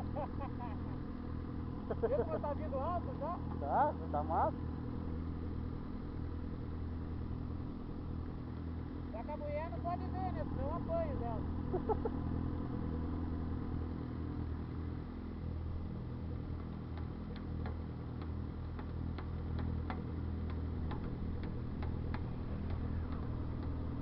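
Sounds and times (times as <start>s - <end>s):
motorcycle engine idling: 0.0s - 24.0s
light ticking: 16.5s - 24.0s.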